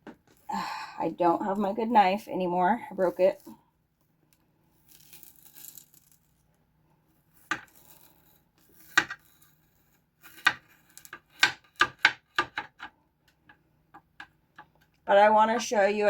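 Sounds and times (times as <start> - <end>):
knife chopping potatoes: 8.8 - 9.2, 10.2 - 12.9.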